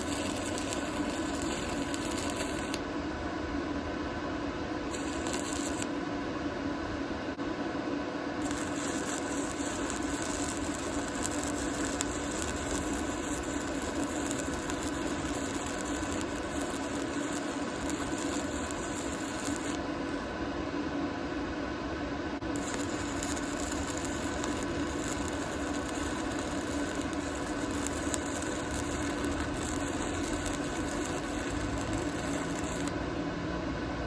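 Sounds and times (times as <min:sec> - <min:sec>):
welding arc crackling and hissing: 0:00.0 - 0:03.0, 0:04.9 - 0:06.0, 0:08.4 - 0:20.4, 0:22.4 - 0:33.0
steady workshop hum: 0:00.0 - 0:34.0.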